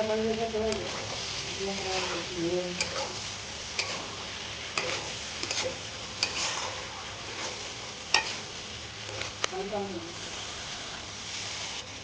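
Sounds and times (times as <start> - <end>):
spatula stirring: 0.0 - 11.8
curry sizzling in a pan: 0.0 - 12.0
spatula clacking against pan: 8.1 - 8.4.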